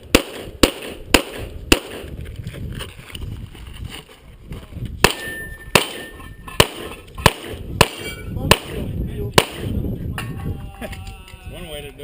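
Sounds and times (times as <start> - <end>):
pistol shots: 0.0 - 2.1, 5.0 - 9.8.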